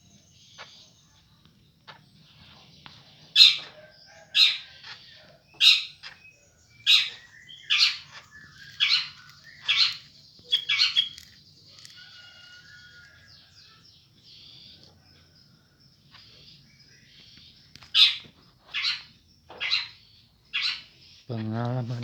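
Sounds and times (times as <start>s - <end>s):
bird giving harsh rasping calls: 4.4s - 4.9s, 5.6s - 6.1s, 6.9s - 11.3s, 20.6s - 20.9s.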